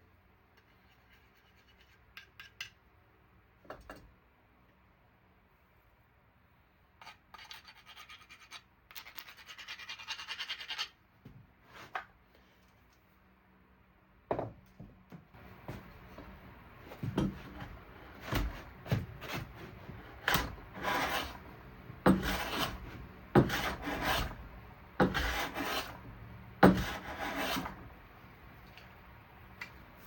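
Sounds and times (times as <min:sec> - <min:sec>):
hand plane shaving wood: 0:17.5 - 0:21.5, 0:22.1 - 0:24.4, 0:25.0 - 0:26.0, 0:26.6 - 0:27.8.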